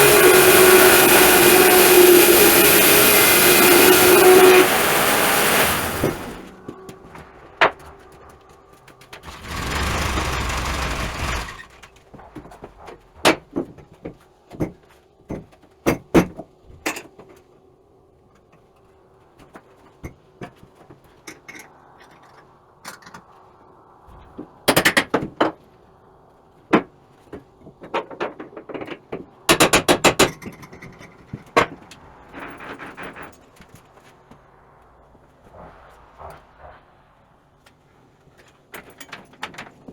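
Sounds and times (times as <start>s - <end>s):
loud rush of noise: 0.0s - 11.8s, 33.9s - 38.2s
rattling clatters: 8.9s - 14.0s.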